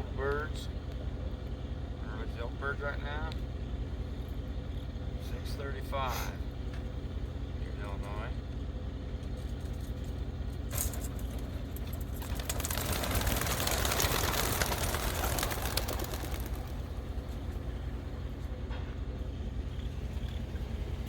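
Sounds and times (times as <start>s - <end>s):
vehicle engine idling: 0.0s - 21.0s
pigeon wings flapping: 10.7s - 17.8s.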